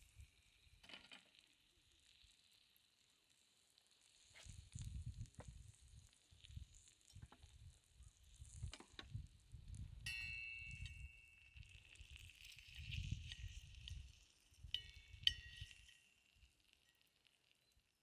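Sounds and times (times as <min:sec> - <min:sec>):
meat sizzling in a pan: 0:00.0 - 0:08.7, 0:09.3 - 0:17.0
high steady tone: 0:10.1 - 0:11.6.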